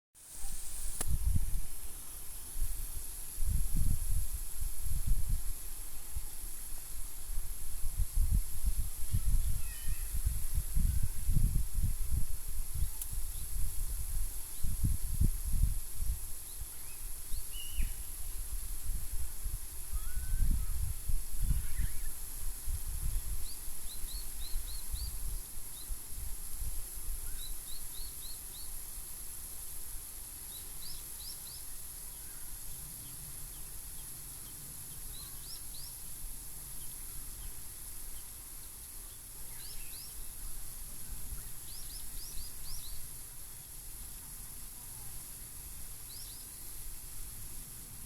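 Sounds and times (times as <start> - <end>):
steady high hiss: 0.2 - 48.0
small birds chirping: 16.4 - 18.2, 30.5 - 43.1.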